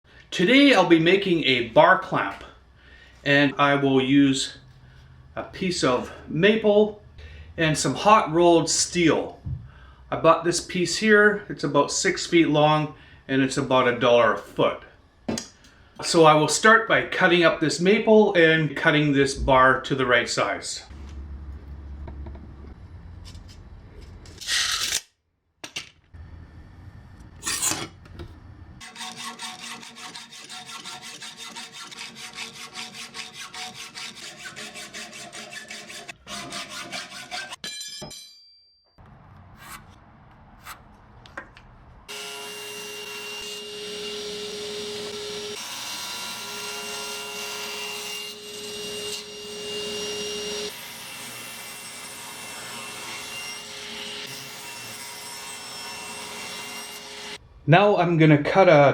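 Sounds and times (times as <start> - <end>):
hand sawing strokes: 28.8 - 37.6, 39.4 - 40.9
power saw whine: 42.1 - 47.6.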